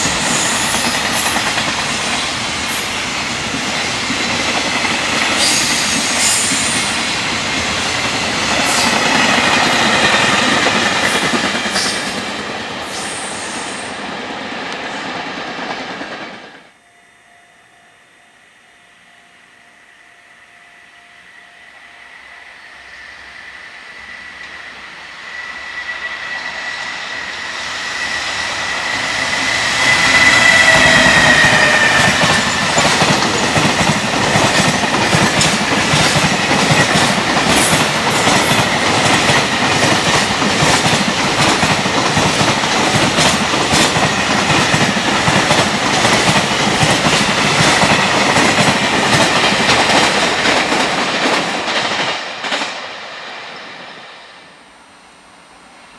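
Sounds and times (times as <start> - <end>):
electric train whine: 0.0 - 55.9
wheels clacking over rail joints: 28.7 - 52.8.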